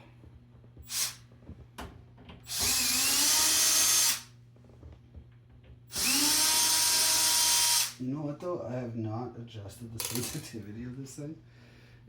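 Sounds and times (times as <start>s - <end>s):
cordless drill whirring: 0.8s - 1.2s, 2.5s - 4.3s, 5.9s - 8.0s.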